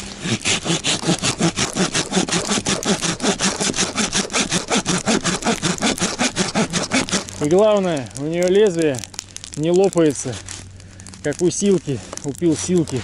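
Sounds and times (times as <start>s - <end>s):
hand saw cutting wood: 0.0s - 7.4s.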